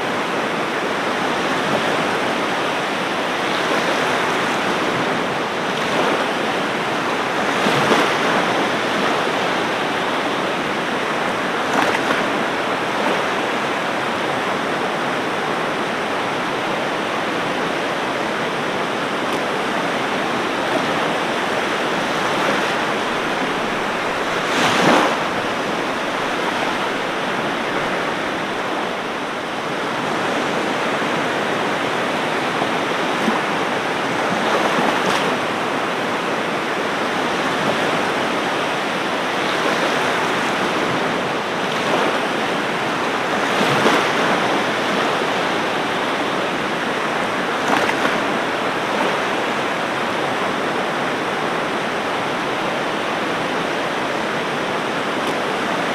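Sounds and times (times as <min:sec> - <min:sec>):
waves breaking: 0:00.0 - 0:55.9
wave crashes: 0:19.1 - 0:36.2.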